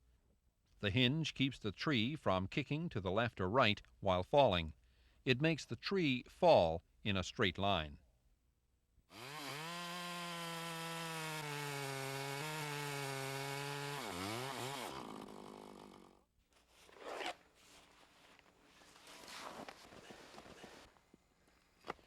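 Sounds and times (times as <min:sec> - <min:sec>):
chainsaw cutting tree: 0:09.1 - 0:16.3.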